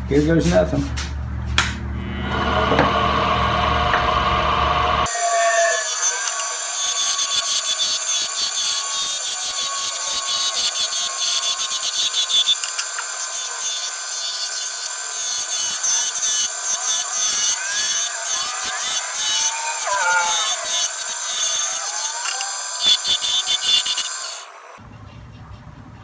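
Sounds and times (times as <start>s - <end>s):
wood being rasped: 5.0s - 24.8s.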